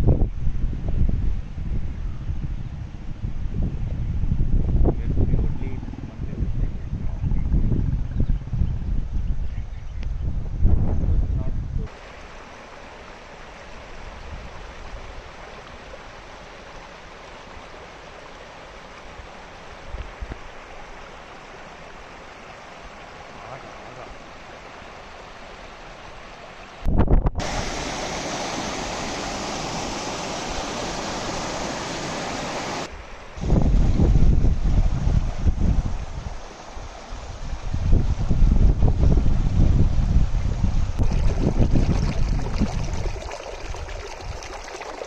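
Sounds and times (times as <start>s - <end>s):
running water rushing: 11.9s - 39.2s, 40.2s - 45.0s.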